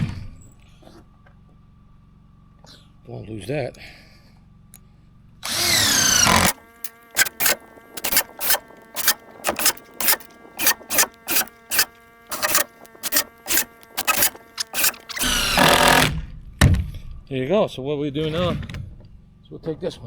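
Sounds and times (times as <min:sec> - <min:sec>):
power screwdriver motor: 0:05.4 - 0:16.2.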